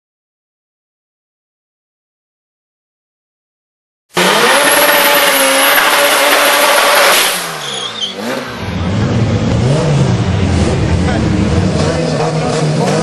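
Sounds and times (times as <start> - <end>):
car engine revving: 4.1 - 13.0
loud rushing noise: 4.2 - 13.0.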